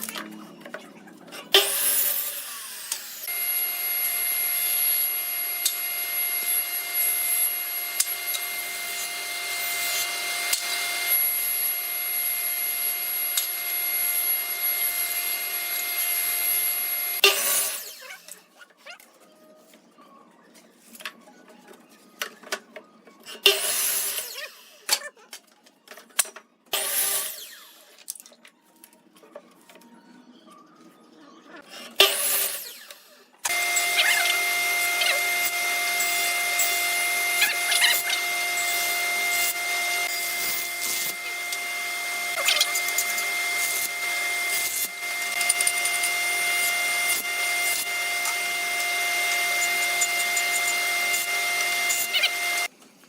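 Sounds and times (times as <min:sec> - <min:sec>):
power tool whining: 0:01.4 - 0:18.4, 0:26.8 - 0:28.0, 0:31.8 - 0:52.7.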